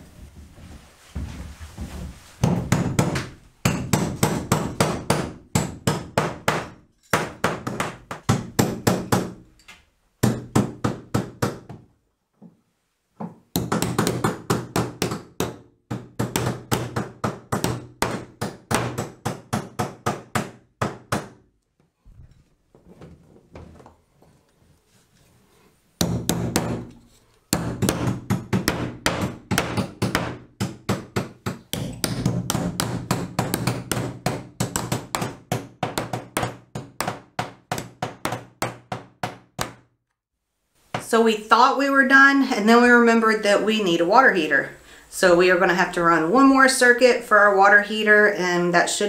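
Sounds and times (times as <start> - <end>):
hammer driving nails into wood: 2.4 - 9.6, 10.2 - 11.8, 13.2 - 21.5, 26.0 - 39.9.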